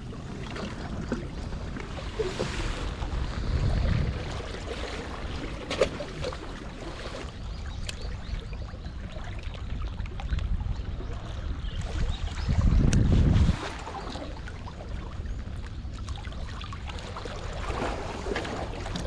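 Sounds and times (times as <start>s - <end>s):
wind buffeting microphone: 0.0s - 6.4s, 10.4s - 14.0s
water moving among rocks: 0.0s - 9.8s, 11.9s - 19.0s.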